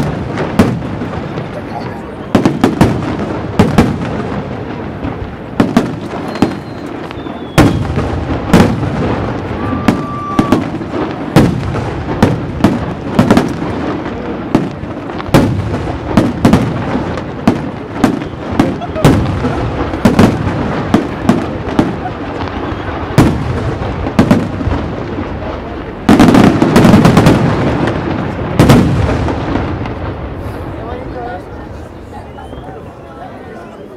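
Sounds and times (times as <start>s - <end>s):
continuous crackle: 0.0s - 32.8s
firework shells bursting: 2.4s - 30.5s
faint firework whistles: 5.7s - 8.1s, 9.5s - 11.0s, 18.0s - 19.2s, 21.8s - 23.4s, 32.1s - 33.9s.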